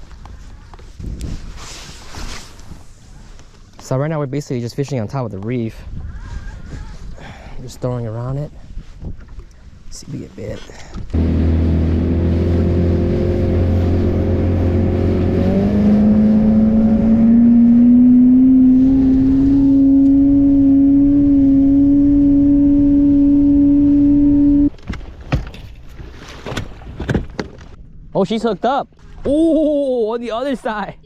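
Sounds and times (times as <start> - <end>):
boat motor humming: 11.1 - 24.8.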